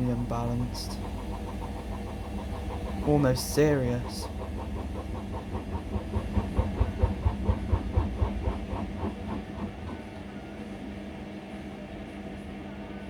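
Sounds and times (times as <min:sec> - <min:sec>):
motor hum: 0:00.0 - 0:13.0
washing machine drum knocking: 0:00.9 - 0:10.0.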